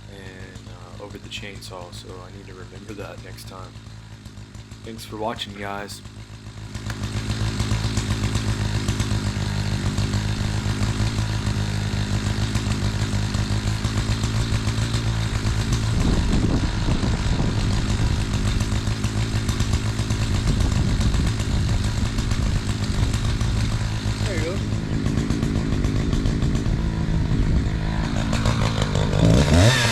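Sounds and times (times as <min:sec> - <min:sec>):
chainsaw cutting log: 0:00.0 - 0:29.9.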